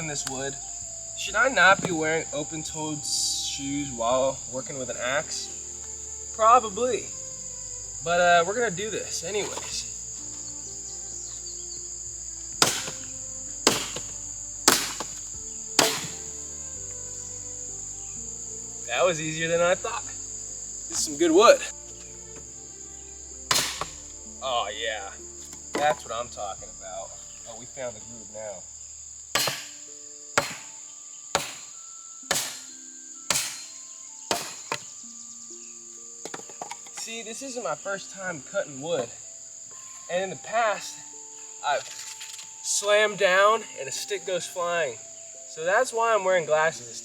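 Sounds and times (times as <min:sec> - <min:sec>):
insects droning: 0:00.0 - 0:47.0
axe chopping wood: 0:01.8 - 0:02.2, 0:09.3 - 0:09.8, 0:12.5 - 0:16.6, 0:23.5 - 0:24.2, 0:25.4 - 0:26.1, 0:29.3 - 0:35.0, 0:36.3 - 0:37.0.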